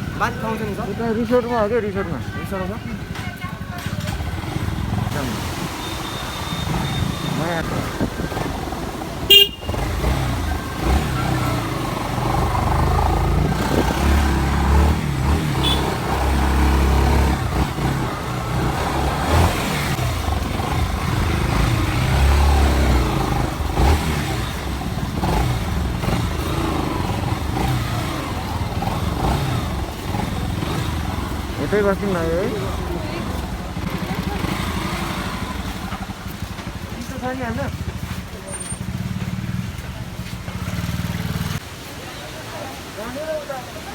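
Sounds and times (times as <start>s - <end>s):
vehicle engines rumbling: 0.0s - 43.9s
car horn toot: 9.3s - 10.1s, 15.6s - 16.1s.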